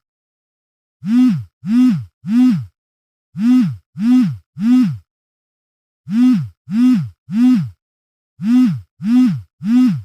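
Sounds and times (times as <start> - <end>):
phone vibration buzzing: 1.0 - 2.8, 3.4 - 5.1, 6.1 - 7.8, 8.4 - 10.0.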